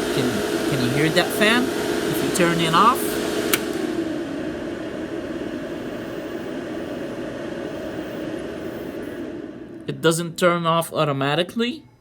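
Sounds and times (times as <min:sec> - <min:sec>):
cooling fan whirring: 0:00.0 - 0:12.0
sharp click: 0:03.5 - 0:03.8.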